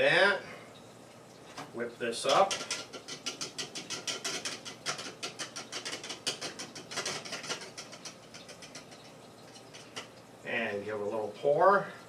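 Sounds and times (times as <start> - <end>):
whisk clicking against bowl: 2.3 - 9.2.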